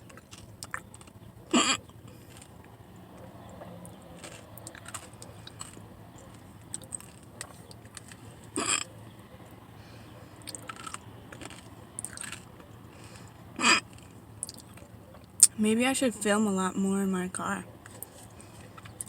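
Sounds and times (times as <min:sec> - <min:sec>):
person chewing crunchy food: 0:00.0 - 0:09.2, 0:09.8 - 0:15.5
person hiccupping: 0:01.5 - 0:01.8, 0:08.6 - 0:08.9, 0:13.6 - 0:14.6.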